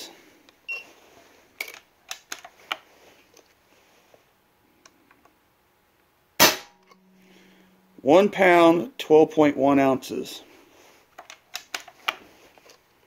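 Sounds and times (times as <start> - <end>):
air rifle hammer crack: 6.4 - 6.8
air rifle handling clicks: 11.1 - 12.2.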